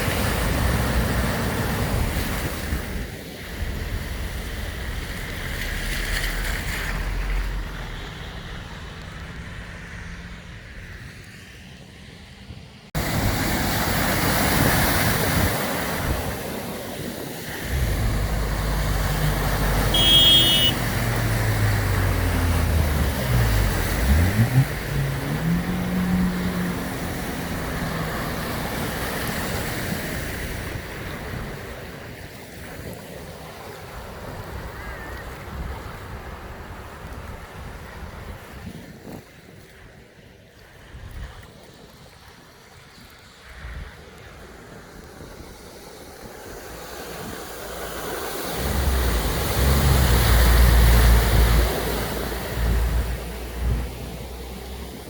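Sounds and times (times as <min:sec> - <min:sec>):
floodwater splashing and rushing: 0:00.0 - 0:55.0
vehicle engine hum: 0:03.5 - 0:11.5, 0:17.5 - 0:31.5, 0:47.6 - 0:55.0.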